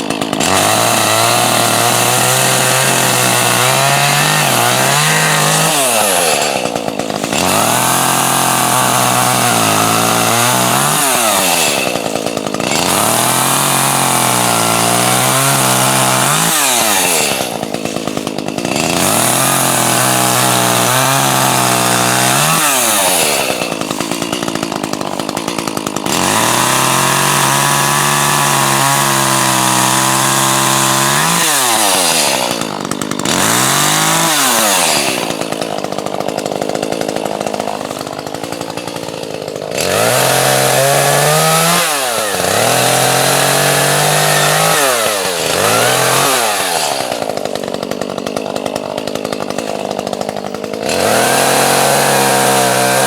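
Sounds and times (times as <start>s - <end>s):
chainsaw cutting logs: 0.0s - 53.0s.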